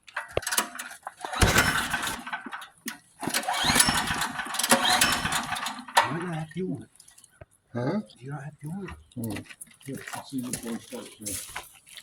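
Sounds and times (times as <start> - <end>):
generator pull-start rattle: 0.0 - 6.5.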